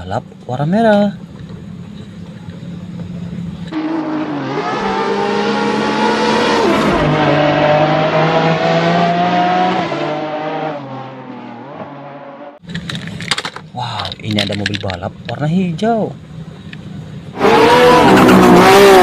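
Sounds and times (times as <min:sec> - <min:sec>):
racing car engines revving: 0:02.6 - 0:12.6, 0:17.2 - 0:19.0.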